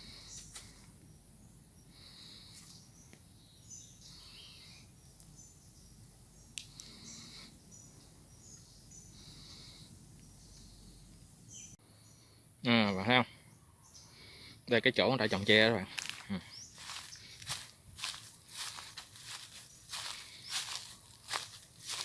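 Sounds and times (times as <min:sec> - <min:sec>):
birds chirping: 0:00.0 - 0:22.0
insects calling: 0:00.0 - 0:22.0.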